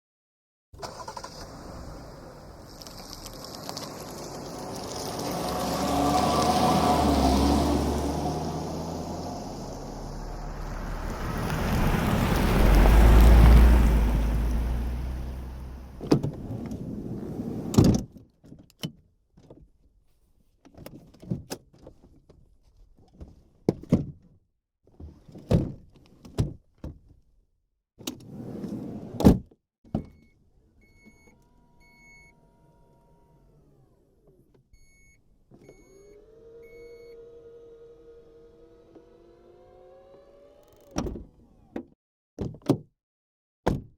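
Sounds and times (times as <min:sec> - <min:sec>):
car door thunks: 0:43.7 - 0:43.9.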